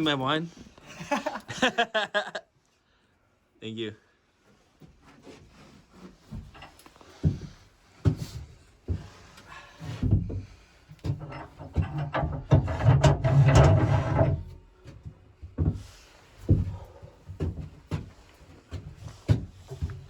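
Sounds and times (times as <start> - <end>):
rough scraping of wood: 11.4 - 14.6.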